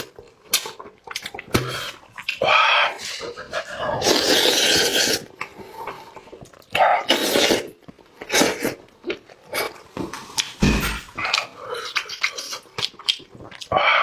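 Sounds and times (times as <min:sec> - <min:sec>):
low thump: 0:10.6 - 0:11.2.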